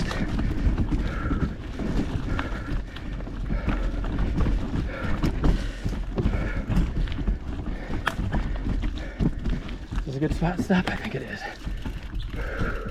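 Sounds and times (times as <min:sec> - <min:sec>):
mountain bike rattling and knocking: 0:00.0 - 0:12.9
rider breathing hard: 0:00.0 - 0:12.9.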